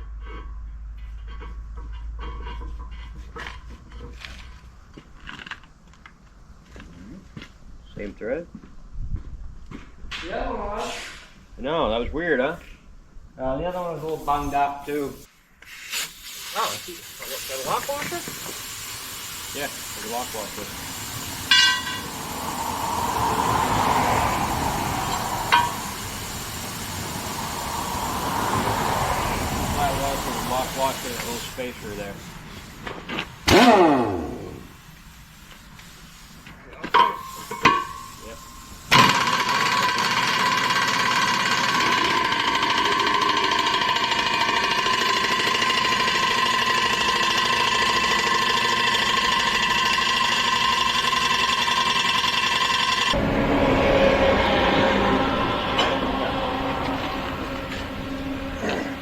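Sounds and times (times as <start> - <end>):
steady hiss: 13.6 - 33.5, 34.2 - 39.0
machine pulsing rattle and whine: 39.0 - 59.0.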